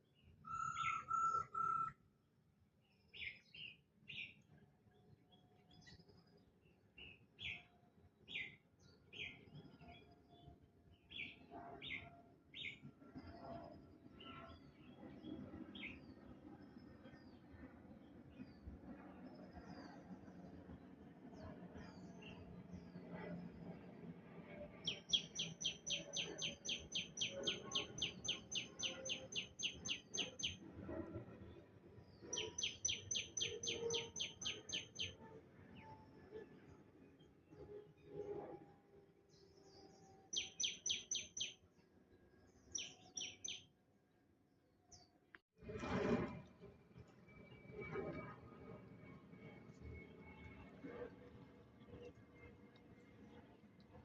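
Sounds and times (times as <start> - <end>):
birds chirping: 32.3 - 35.1, 40.4 - 41.5, 42.8 - 43.6
bird singing repeated high notes: 40.3 - 41.5.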